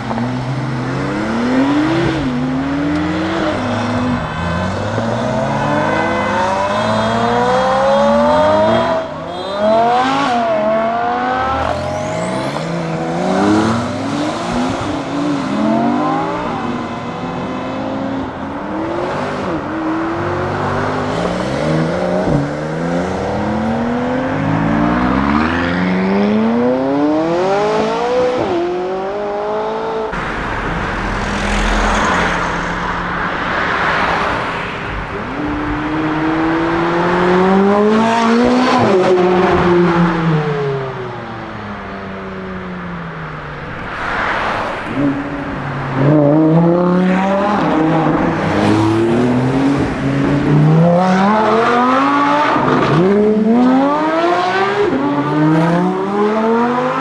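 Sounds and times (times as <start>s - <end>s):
sports car engine accelerating: 0.0s - 42.8s.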